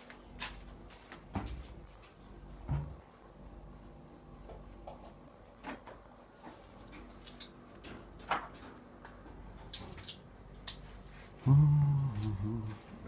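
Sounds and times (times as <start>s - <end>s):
man's drawn-out vocal sound: 11.4s - 13.0s.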